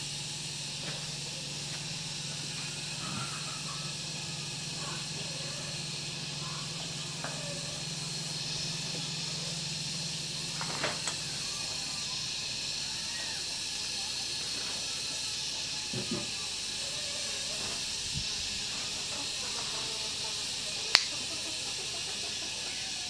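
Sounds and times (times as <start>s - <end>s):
steady hiss: 0.0s - 23.0s
sharp click: 20.9s - 21.2s.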